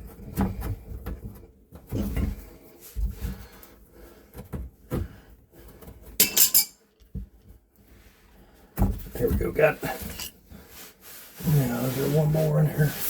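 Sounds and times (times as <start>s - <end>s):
sharp metal scrape: 6.2s - 6.7s, 10.0s - 10.4s.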